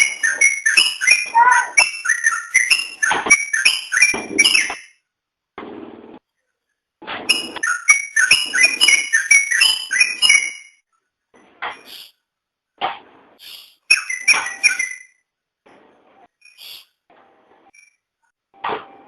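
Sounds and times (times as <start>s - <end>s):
bulbul singing whistled notes: 0.0s - 4.9s, 7.3s - 10.8s, 13.4s - 15.2s.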